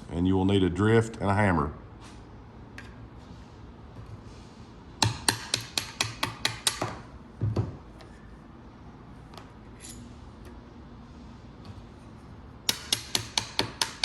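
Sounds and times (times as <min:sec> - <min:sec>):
hammer striking metal punch: 0:05.0 - 0:07.0, 0:12.7 - 0:14.0.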